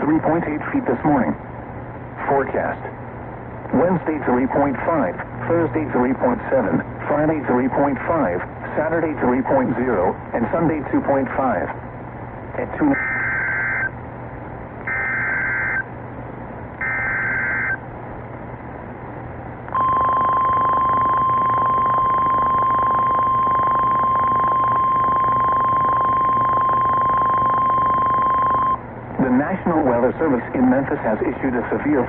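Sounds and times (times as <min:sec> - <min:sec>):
radio hiss: 0:03.6 - 0:11.8
steady alarm tone: 0:12.9 - 0:13.9, 0:14.9 - 0:15.9, 0:16.8 - 0:17.8, 0:19.8 - 0:28.8
warbling digital data tones: 0:12.9 - 0:13.9, 0:14.9 - 0:15.9, 0:16.8 - 0:17.8.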